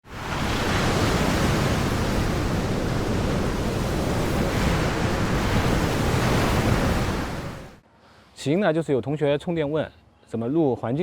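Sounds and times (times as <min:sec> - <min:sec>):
ocean surf washing: 0:00.0 - 0:07.8.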